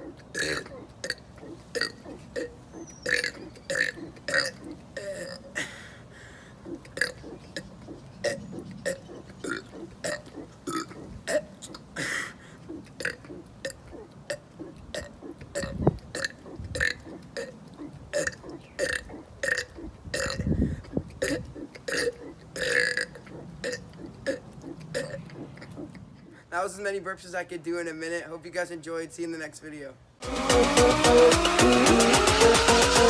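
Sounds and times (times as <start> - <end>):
man burping: 0.0 - 25.9.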